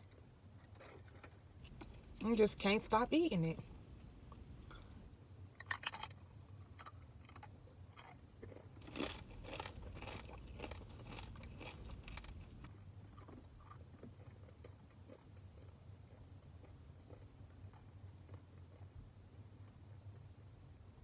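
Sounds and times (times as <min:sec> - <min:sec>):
tortilla chips crunching: 0:00.8 - 0:03.0, 0:05.6 - 0:15.7.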